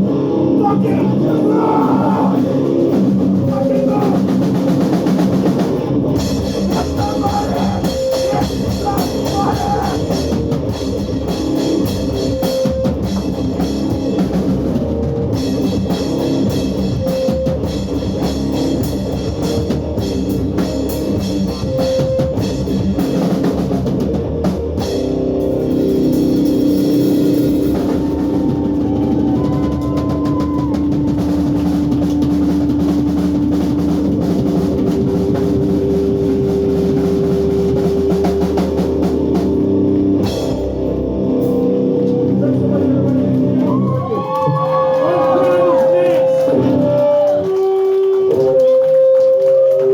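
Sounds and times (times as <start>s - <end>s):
bass guitar: 0.0s - 49.9s
distorted electric guitar: 0.0s - 49.9s
pounding drum kit: 0.0s - 49.9s.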